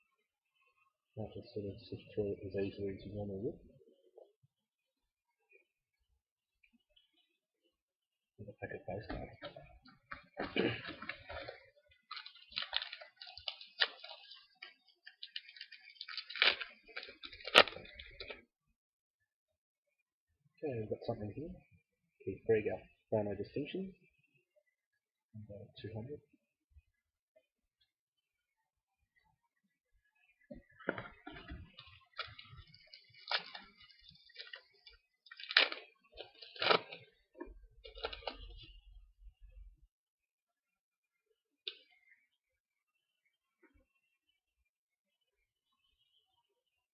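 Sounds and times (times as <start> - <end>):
foil card packs crackling: 10.6 - 18.4, 31.4 - 37.2, 37.8 - 38.7
trading cards crackling and clicking: 32.2 - 37.1.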